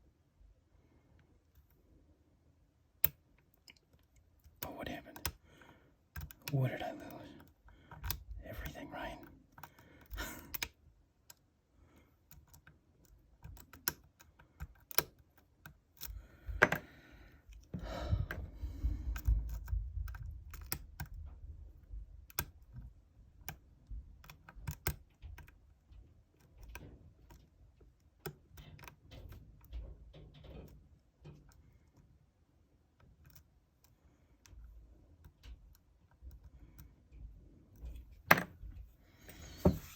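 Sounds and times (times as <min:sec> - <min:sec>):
lock pick clicking in a lock: 0:03.0 - 0:03.2, 0:06.1 - 0:06.6, 0:07.4 - 0:08.8, 0:09.5 - 0:11.4, 0:12.2 - 0:16.9, 0:19.1 - 0:21.2, 0:21.8 - 0:23.6, 0:24.2 - 0:25.7, 0:26.4 - 0:29.7.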